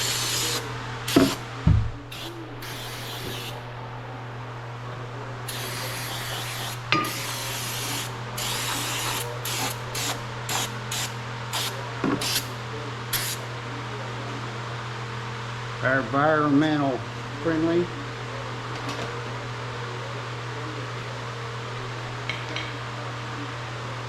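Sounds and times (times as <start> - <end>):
aerosol can spraying: 0.0 - 1.4, 2.1 - 3.6, 5.5 - 12.5.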